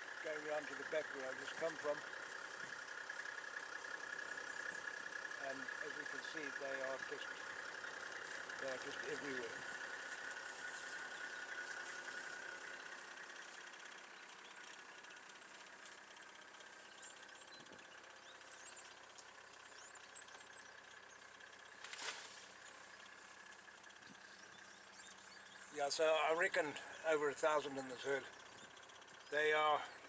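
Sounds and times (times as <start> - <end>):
faint vehicle engine hum: 0.0 - 30.0.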